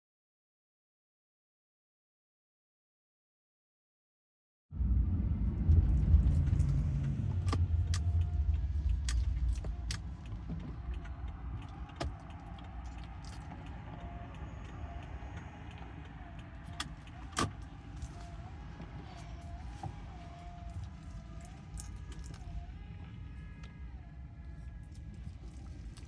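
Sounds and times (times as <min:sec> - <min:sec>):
vehicle low rumble: 0:04.7 - 0:26.0.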